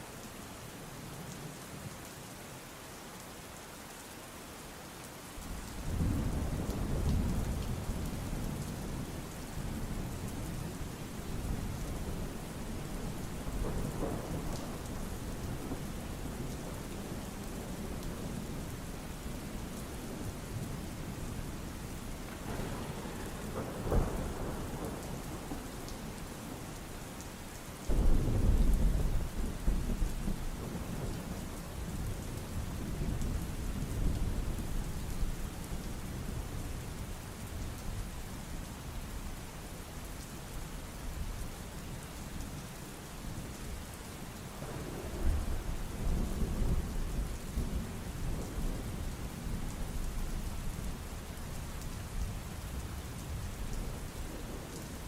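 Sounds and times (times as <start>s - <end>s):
steady rain: 0.0s - 55.0s
thunder rumbling: 5.8s - 27.1s, 27.9s - 34.9s, 44.5s - 55.0s.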